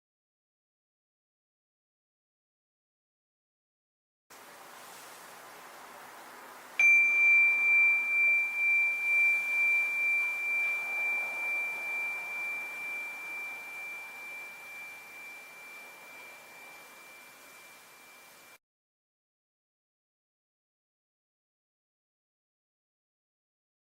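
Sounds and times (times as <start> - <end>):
bell ringing: 6.8 - 18.6.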